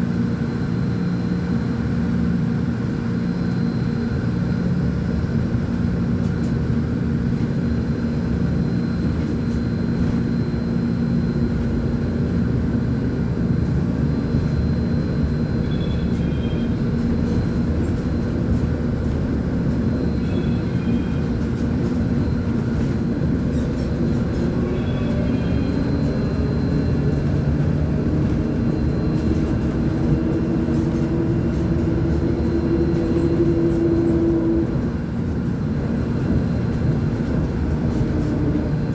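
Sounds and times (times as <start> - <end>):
bus diesel engine running: 4.1 - 38.9.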